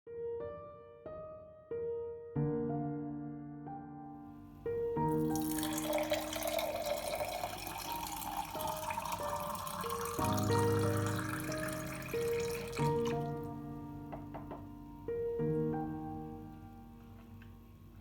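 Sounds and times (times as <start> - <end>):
soft piano music: 0.1 - 18.0
tap water running into sink: 5.1 - 13.5.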